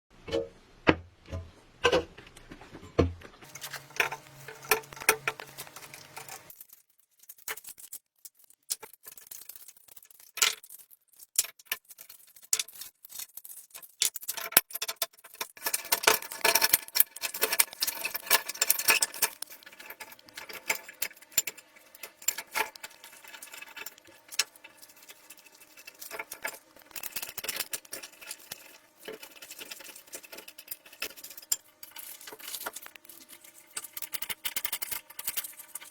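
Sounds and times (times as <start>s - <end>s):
hand tools clicking and scraping: 3.4s - 6.6s, 11.3s - 35.9s.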